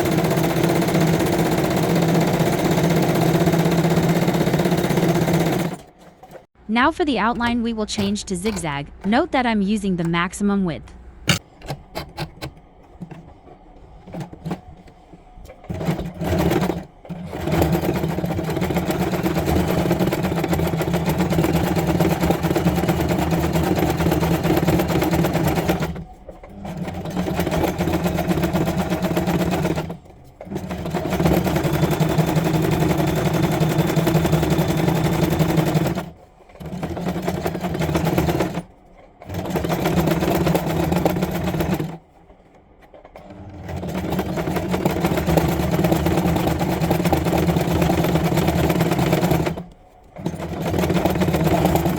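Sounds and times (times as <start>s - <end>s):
sewing machine running: 0.0s - 6.5s, 15.6s - 42.0s, 43.2s - 51.9s.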